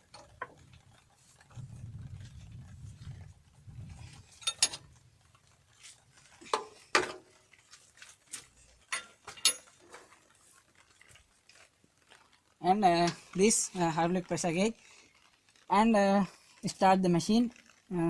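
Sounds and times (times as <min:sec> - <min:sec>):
low rumble: 0:01.5 - 0:04.3.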